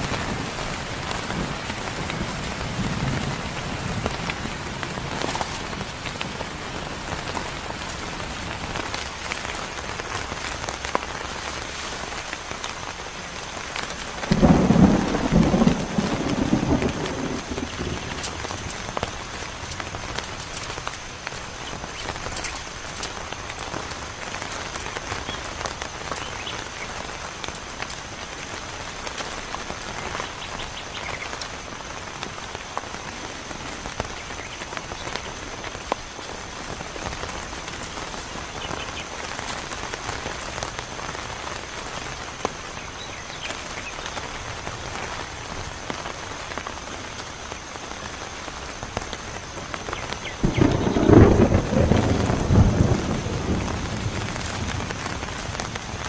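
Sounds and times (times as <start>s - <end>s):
heavy rain falling: 0.0s - 56.0s
thunder clap: 14.3s - 19.5s, 50.4s - 56.0s.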